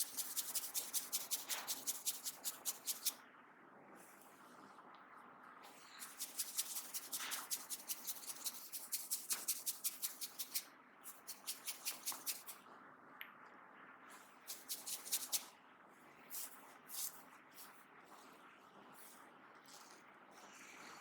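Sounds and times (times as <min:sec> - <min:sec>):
hands crackling through hair: 0:00.0 - 0:03.1, 0:06.0 - 0:12.6, 0:14.5 - 0:15.4.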